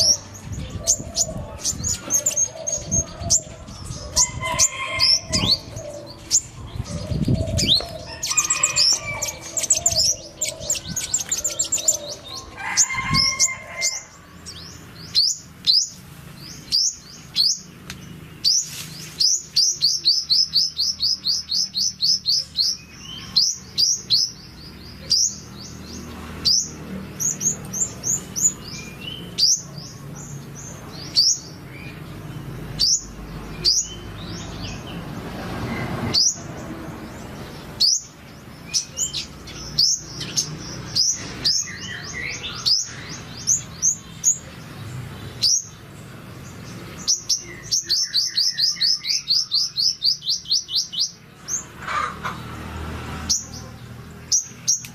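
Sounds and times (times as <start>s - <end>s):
lower-pitched bird calls: 0.0s - 34.9s
bird chirping and trilling: 0.0s - 52.5s.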